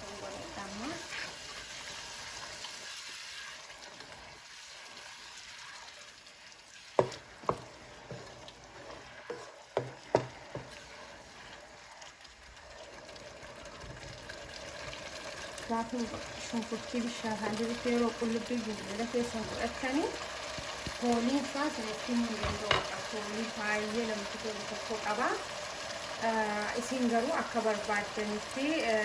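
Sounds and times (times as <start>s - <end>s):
onions sizzling in a pot: 0.0s - 29.0s
spoon knocking against a pot: 7.0s - 8.4s, 9.3s - 10.8s, 22.4s - 23.0s.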